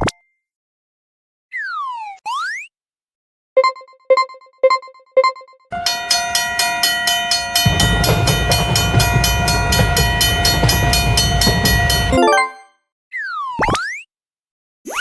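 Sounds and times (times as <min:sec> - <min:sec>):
crossing warning bells clanging: 0:05.7 - 0:12.7
steady held tone: 0:05.7 - 0:12.7
passing train rumble: 0:05.8 - 0:12.6.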